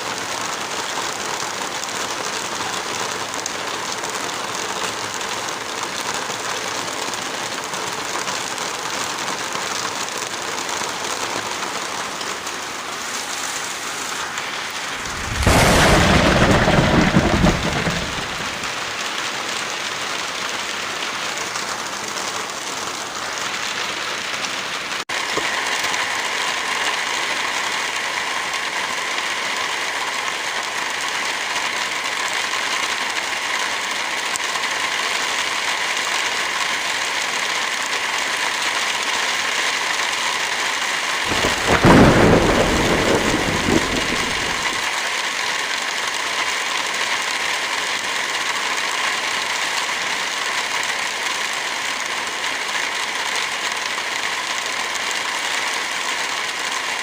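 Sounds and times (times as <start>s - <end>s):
steady rain: 0.0s - 57.0s
thunder rumble: 14.8s - 19.0s, 41.3s - 44.9s.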